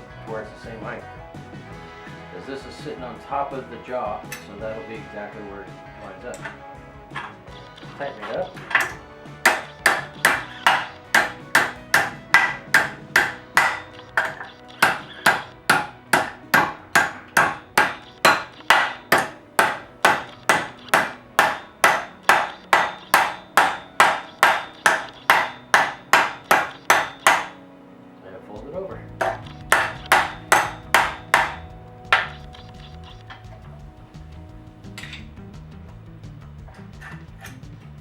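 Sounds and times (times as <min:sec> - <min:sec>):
hammer striking steel: 0:06.3 - 0:27.6, 0:29.2 - 0:33.3.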